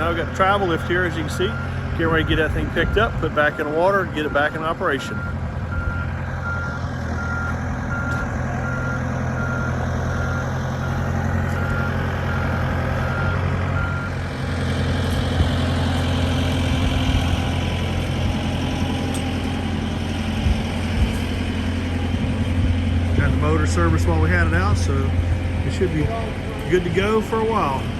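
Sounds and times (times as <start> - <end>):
warning alarm beeping: 0.0 - 14.2
engine running: 0.0 - 27.9.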